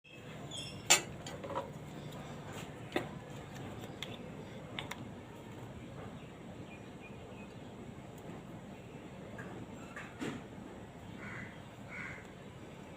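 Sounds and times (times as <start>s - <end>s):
steady low hum: 0.1s - 12.9s.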